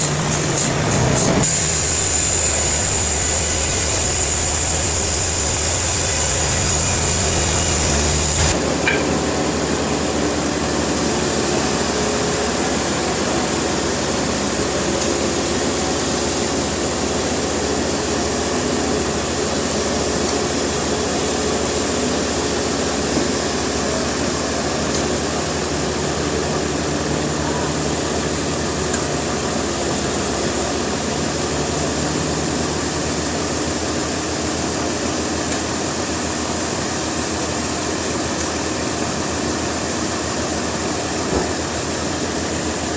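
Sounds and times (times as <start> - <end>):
high-pitched whine: 0.0 - 9.9
sawmill machinery engine drone: 0.0 - 42.9.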